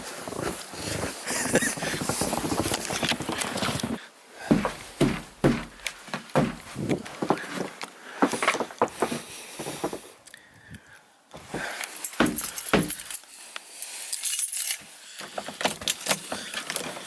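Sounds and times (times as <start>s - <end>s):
irregular clinks and knocks: 12.0s - 13.3s.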